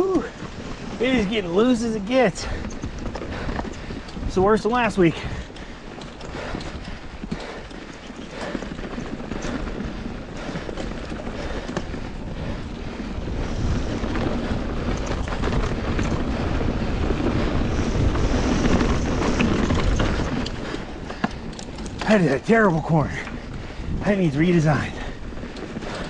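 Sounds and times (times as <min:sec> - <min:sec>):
bike rattling and knocking: 0:00.0 - 0:26.0
wind hitting microphone: 0:00.0 - 0:26.0
tyres crunching over gravel: 0:16.8 - 0:26.0.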